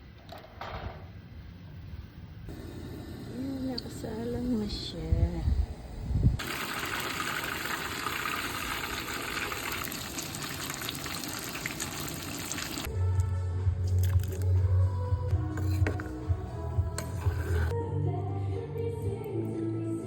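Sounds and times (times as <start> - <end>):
fish sizzling in hot oil: 6.4 - 12.9
music: 12.9 - 20.0.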